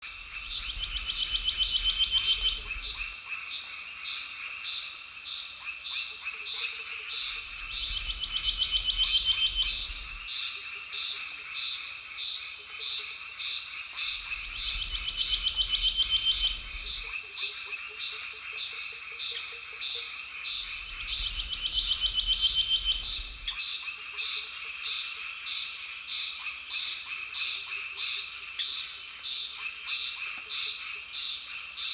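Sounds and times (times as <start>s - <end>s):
high-pitched insect trill: 0.0s - 31.9s
frogs pulsed calls: 0.1s - 31.9s.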